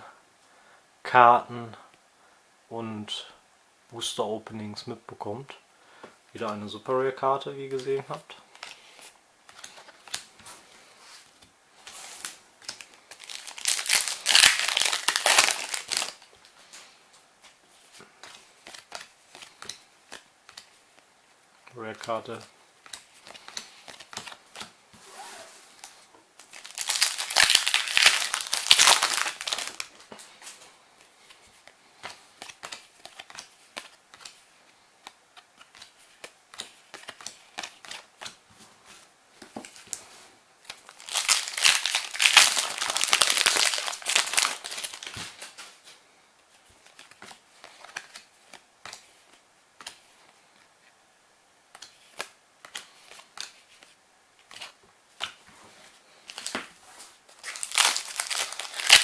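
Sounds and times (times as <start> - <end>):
trading cards rustling and clicking: 7.7 - 21.0, 21.9 - 40.0, 40.6 - 50.7, 57.3 - 59.0
foil packs crinkled and torn: 12.7 - 16.3, 26.4 - 29.9, 40.8 - 45.6, 57.4 - 59.0.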